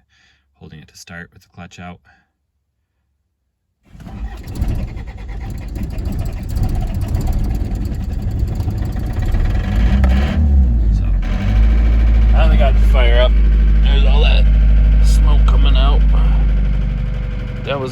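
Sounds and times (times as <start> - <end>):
diesel engine starting and running: 3.9 - 17.9.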